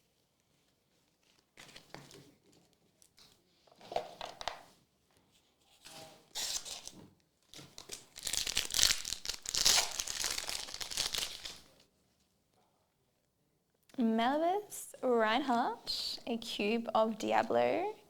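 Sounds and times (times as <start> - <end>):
foil wrapper tearing and crinkling: 7.8 - 11.7.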